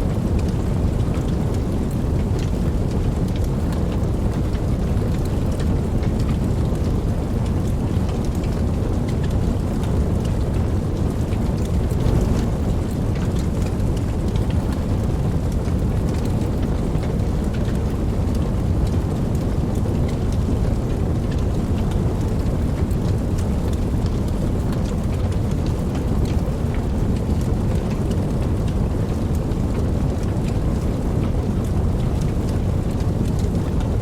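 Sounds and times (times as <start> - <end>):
deep constant rumble: 0.0 - 34.0
heavy rain: 0.0 - 34.0
rain drop ticks: 0.0 - 34.0.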